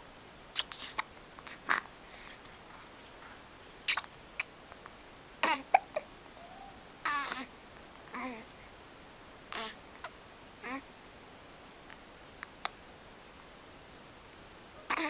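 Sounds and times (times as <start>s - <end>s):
person hiccuping: 5.4s - 6.1s.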